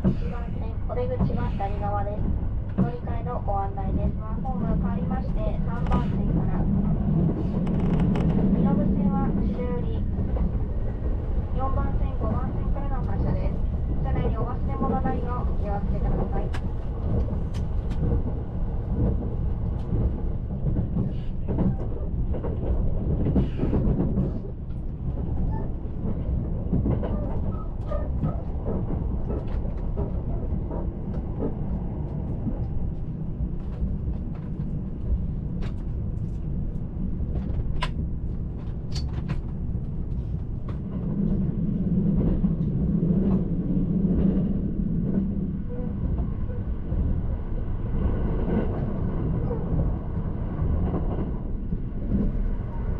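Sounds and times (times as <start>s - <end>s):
train wheels rumbling: 0.0s - 52.9s.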